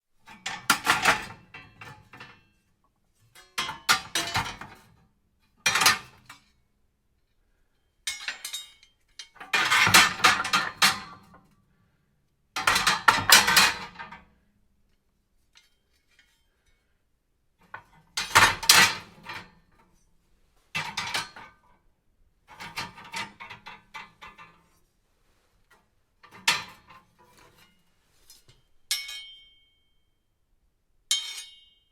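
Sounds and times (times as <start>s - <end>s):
metal fireplace tools clinking: 8.1s - 11.3s, 26.2s - 29.6s, 31.1s - 31.8s.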